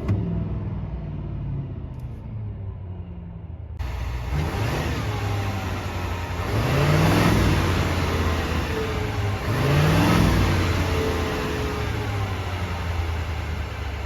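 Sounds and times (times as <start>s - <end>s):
diesel engine revving: 3.8s - 14.0s.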